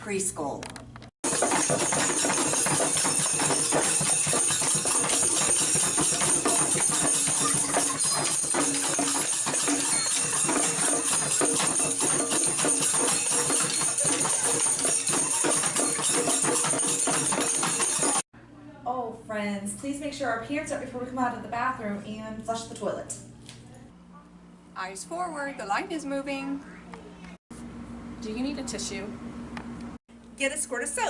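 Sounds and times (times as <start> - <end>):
loud music with jangling percussion: 1.2 - 18.2.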